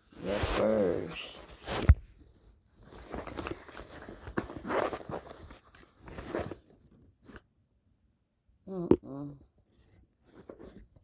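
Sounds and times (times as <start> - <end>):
packaging rustling: 2.8 - 7.4.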